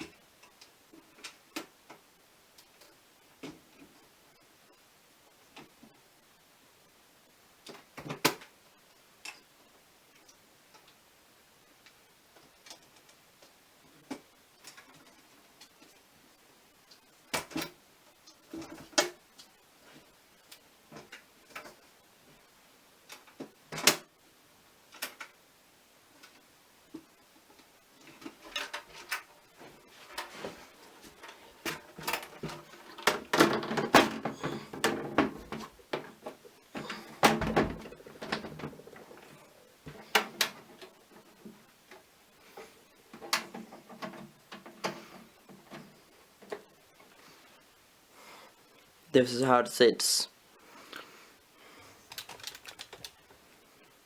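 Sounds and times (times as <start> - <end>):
handling and rustling: 28.0 - 47.2, 51.8 - 53.4
objects clicking and knocking: 31.1 - 41.3, 52.1 - 53.2.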